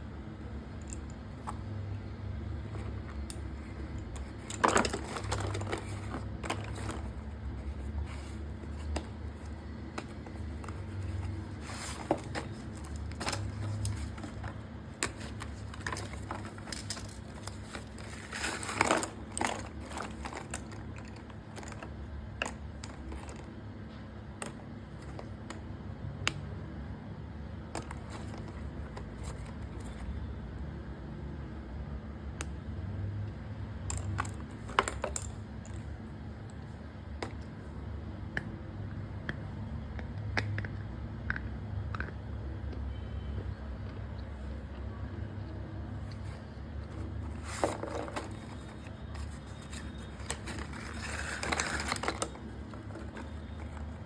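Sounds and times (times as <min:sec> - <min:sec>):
packaging crinkling and scraping: 0:02.6 - 0:23.6, 0:27.8 - 0:30.1, 0:46.0 - 0:54.0
crackly rustles: 0:02.7 - 0:21.9, 0:46.0 - 0:54.0.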